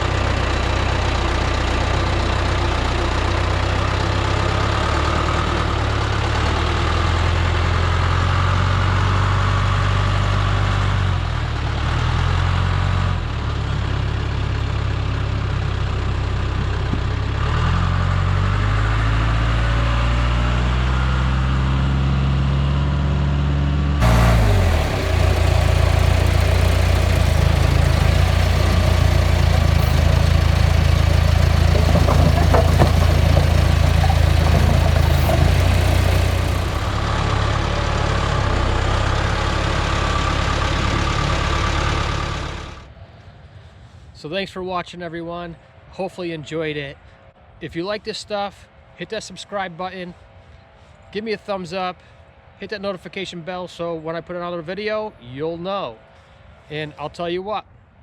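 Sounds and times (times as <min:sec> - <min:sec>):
engine running: 0:24.0 - 0:42.8.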